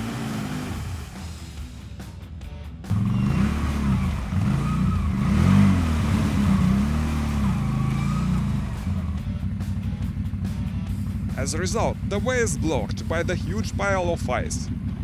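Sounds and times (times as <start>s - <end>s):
atv engine revving: 0.0s - 1.8s, 2.9s - 15.0s.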